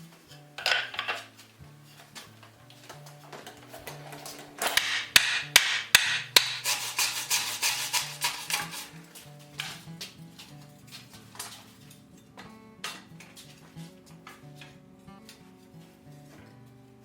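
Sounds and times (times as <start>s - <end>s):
hand tool scraping wood: 0.2s - 12.1s
sharp strikes on wood: 4.6s - 9.0s.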